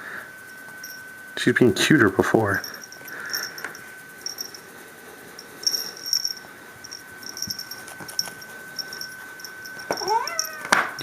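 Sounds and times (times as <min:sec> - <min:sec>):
faint high whine: 0:00.0 - 0:11.0
cat collar bell jingling: 0:00.8 - 0:01.2, 0:02.2 - 0:04.7, 0:05.3 - 0:11.0.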